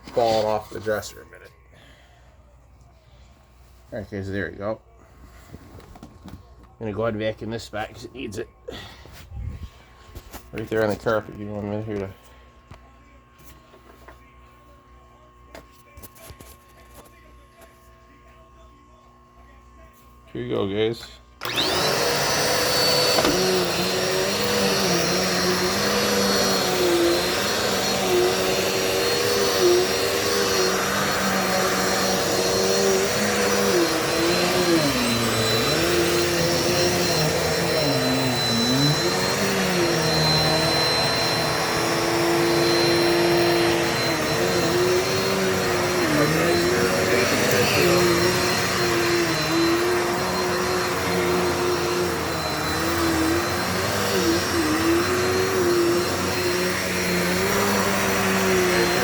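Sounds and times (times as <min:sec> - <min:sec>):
vacuum cleaner running on carpet: 0:00.0 - 0:01.4, 0:05.3 - 0:12.4, 0:20.5 - 0:59.0.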